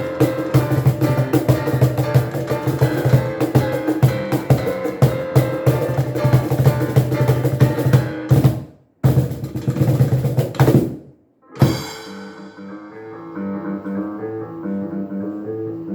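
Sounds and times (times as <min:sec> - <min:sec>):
busy drum beat: 0:00.0 - 0:12.9
sustained pitched notes: 0:11.4 - 0:14.6.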